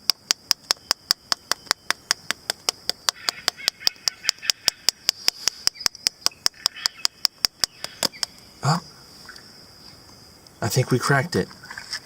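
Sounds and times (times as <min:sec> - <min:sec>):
quick tapping clicks: 0:00.0 - 0:08.4.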